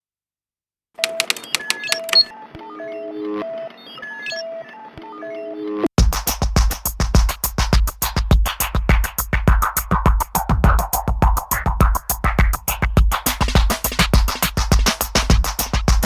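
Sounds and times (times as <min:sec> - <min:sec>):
drum machine beat with bass: 0:06.0 - 0:16.0.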